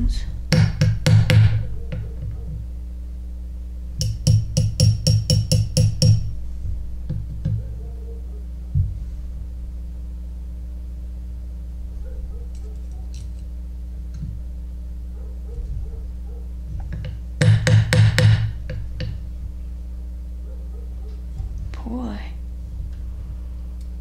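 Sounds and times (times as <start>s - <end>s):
dull knock: 0.5s - 2.6s, 4.0s - 7.7s, 16.7s - 19.2s.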